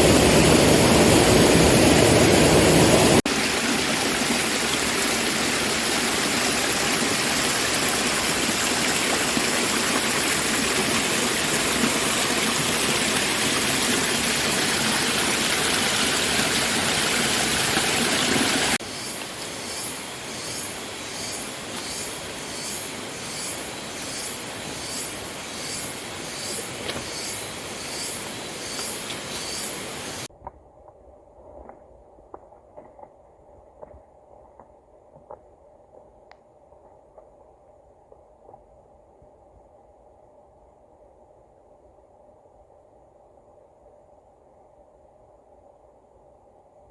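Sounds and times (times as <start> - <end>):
waterfall rushing: 0.0 - 18.8
forest ambience: 0.0 - 46.9.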